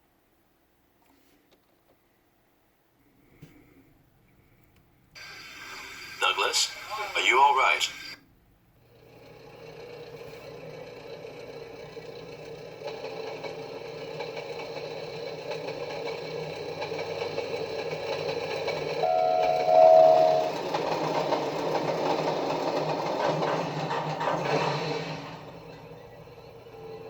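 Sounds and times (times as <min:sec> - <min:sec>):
locomotive running: 0:09.3 - 0:27.0
two-note train whistle: 0:19.0 - 0:21.0.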